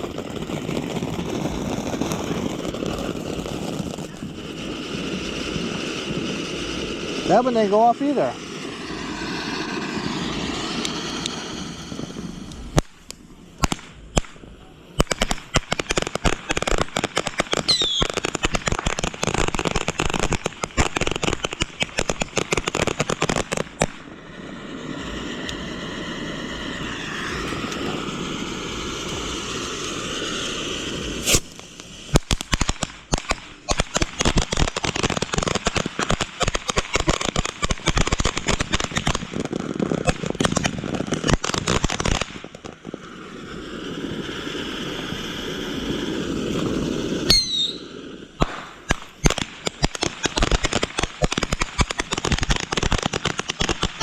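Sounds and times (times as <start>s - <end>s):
fireworks crackling: 0.0s - 54.0s
fireworks hissing: 0.0s - 54.0s
sharp firework bang: 26.6s - 34.6s, 44.2s - 52.5s.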